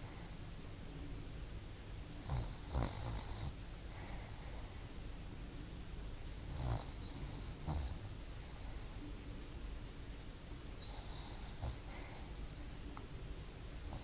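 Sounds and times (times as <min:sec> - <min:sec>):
dog snoring: 0:02.1 - 0:04.8, 0:06.4 - 0:09.0, 0:10.8 - 0:12.4, 0:13.8 - 0:14.0.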